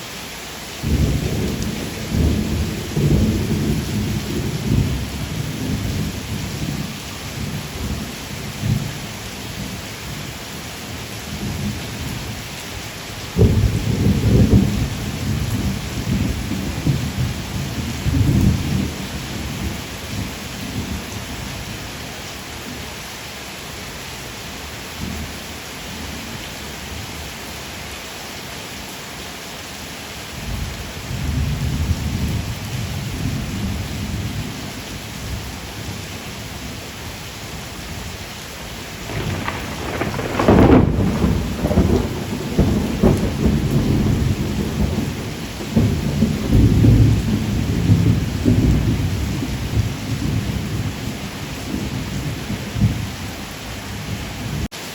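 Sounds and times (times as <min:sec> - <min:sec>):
steady rain: 0:00.0 - 0:54.9
loud thunderclap: 0:00.8 - 0:05.0, 0:13.4 - 0:19.0, 0:39.0 - 0:50.9
thunder rumbling: 0:00.8 - 0:08.9, 0:13.4 - 0:21.0, 0:39.0 - 0:54.7.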